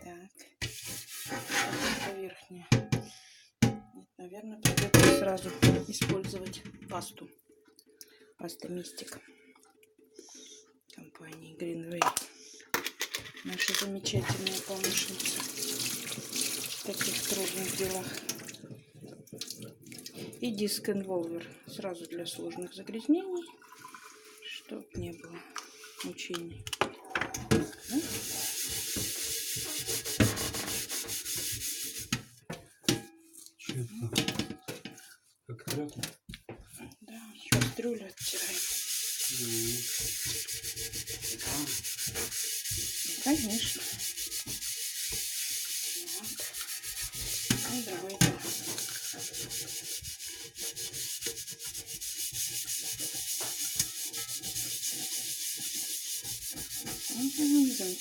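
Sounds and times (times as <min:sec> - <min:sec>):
scouring disc scrubbing saucepan: 0:00.6 - 0:03.1, 0:04.6 - 0:06.8, 0:13.5 - 0:18.5, 0:20.1 - 0:26.4, 0:27.3 - 0:33.2, 0:37.5 - 0:58.0
knocks on saucepan: 0:02.7 - 0:03.9.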